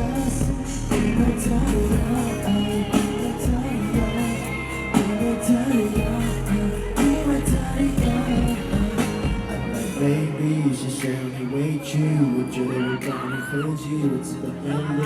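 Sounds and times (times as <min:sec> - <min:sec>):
drums hitting: 0:00.0 - 0:02.4, 0:03.0 - 0:05.4, 0:06.0 - 0:06.3, 0:07.0 - 0:09.6
sustained bass: 0:00.0 - 0:10.7
gliding sung melody: 0:00.0 - 0:15.0.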